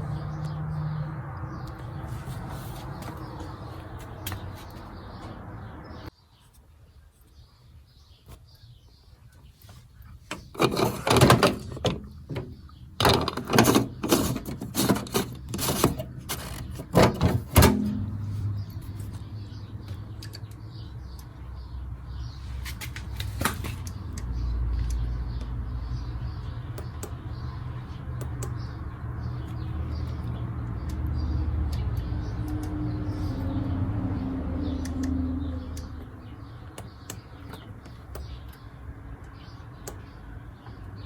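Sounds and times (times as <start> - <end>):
washing machine clunks and knocks: 16.5 - 18.3.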